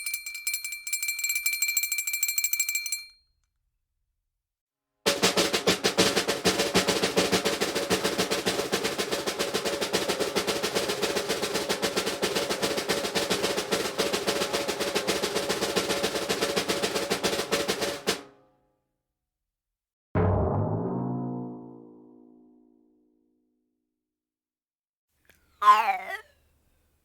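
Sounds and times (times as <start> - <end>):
fast drum roll: 5.1 - 18.3.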